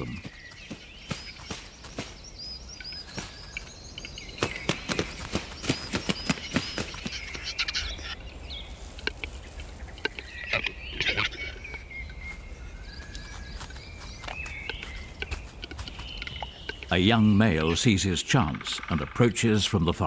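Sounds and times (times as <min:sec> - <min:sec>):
birds fighting clicks and knocks: 0:00.0 - 0:08.2, 0:08.8 - 0:12.4, 0:13.0 - 0:17.8.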